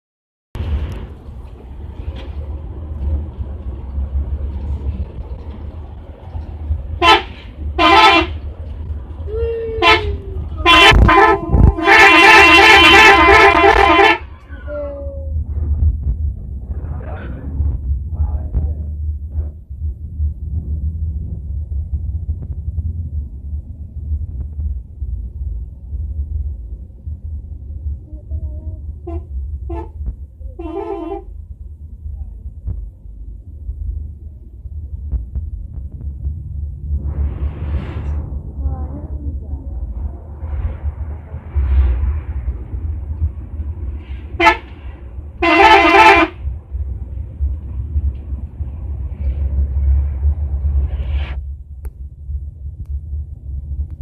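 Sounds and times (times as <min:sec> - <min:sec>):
road noise: 0:00.5 - 0:54.0
bus engine rumble: 0:00.6 - 0:54.0
musical bus horn: 0:07.0 - 0:08.5, 0:09.8 - 0:14.7, 0:28.2 - 0:31.4, 0:44.3 - 0:44.8, 0:45.4 - 0:46.5.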